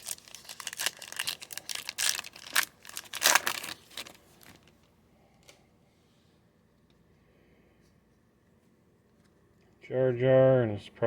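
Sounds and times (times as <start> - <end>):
foil wrapper crinkling: 0.0 - 4.9.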